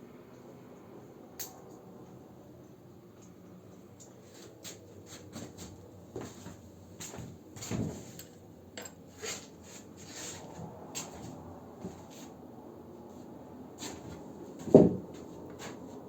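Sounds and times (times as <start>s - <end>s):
metal tools clinking and knocking: 8.1s - 9.0s.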